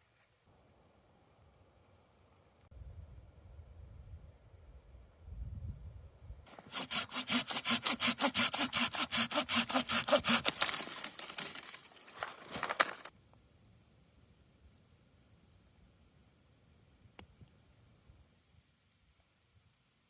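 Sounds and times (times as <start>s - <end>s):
hand saw cutting wood: 6.5s - 11.4s.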